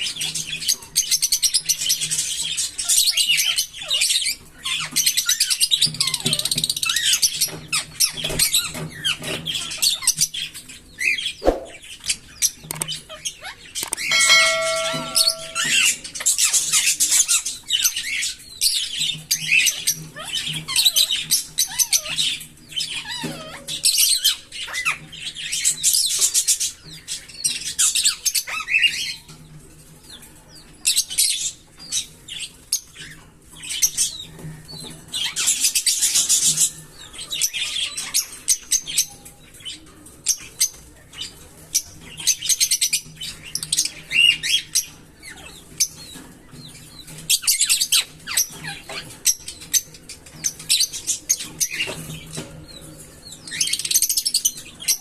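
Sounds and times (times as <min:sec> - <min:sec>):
lovebirds chirping: 0:00.0 - 0:29.3.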